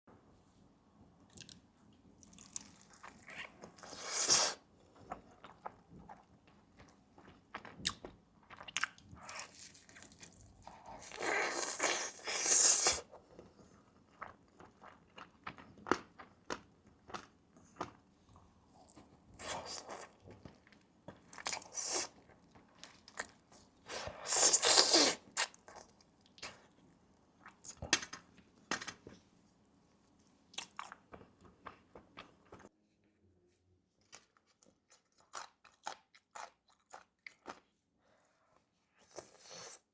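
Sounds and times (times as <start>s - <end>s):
crunching and chewing: 2.2s - 4.2s, 4.8s - 18.0s, 30.0s - 32.7s, 34.0s - 37.8s.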